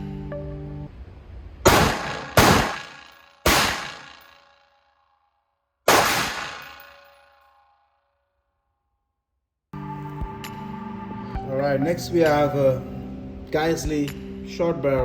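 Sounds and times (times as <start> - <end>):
rifle shots: 1.6 - 4.4, 5.9 - 7.2.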